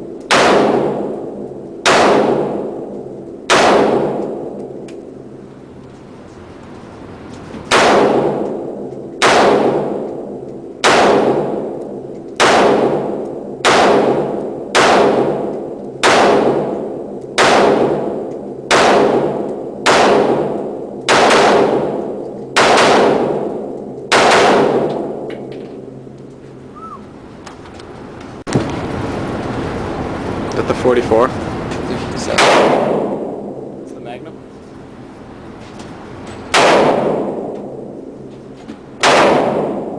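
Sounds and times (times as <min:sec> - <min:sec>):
gunshots with long echo: 0:00.0 - 0:05.4, 0:07.7 - 0:26.1, 0:32.2 - 0:33.9, 0:36.5 - 0:38.3, 0:38.9 - 0:39.9.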